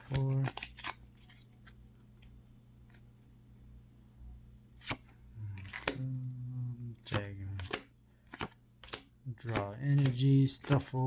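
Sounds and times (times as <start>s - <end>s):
man murmuring: 5.4s - 7.6s
card stock clicking and snapping: 5.6s - 6.0s, 7.0s - 11.0s.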